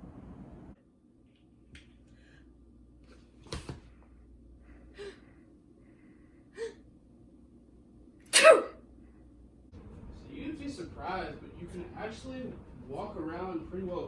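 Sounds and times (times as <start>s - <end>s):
person sneezing: 8.3s - 8.8s.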